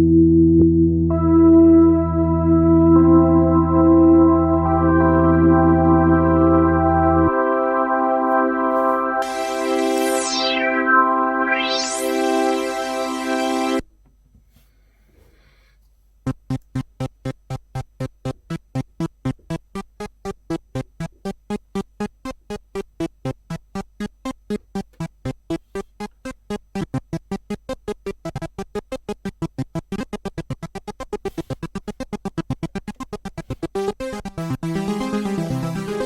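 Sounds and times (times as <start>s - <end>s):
synthesizer arpeggio: 0.3s - 13.8s, 26.0s - 36.0s.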